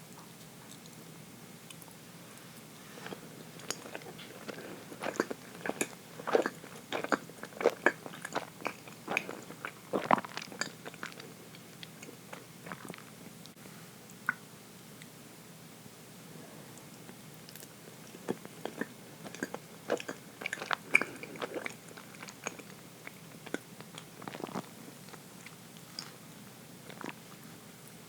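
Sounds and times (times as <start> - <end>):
person chewing cake: 2.9 - 13.5, 17.4 - 27.6.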